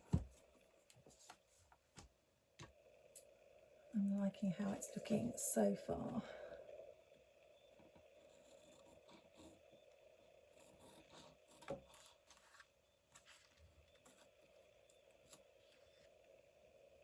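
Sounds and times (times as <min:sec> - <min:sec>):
paper and card rustling: 0:11.6 - 0:14.5.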